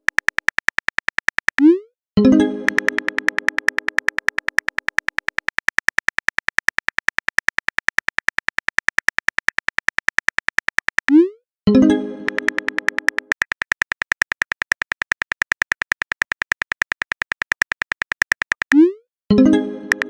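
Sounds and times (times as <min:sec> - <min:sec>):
keyboard typing clicks: 0:00.0 - 0:11.4, 0:12.2 - 0:19.0
plucked chord: 0:02.2 - 0:03.2, 0:11.7 - 0:12.6.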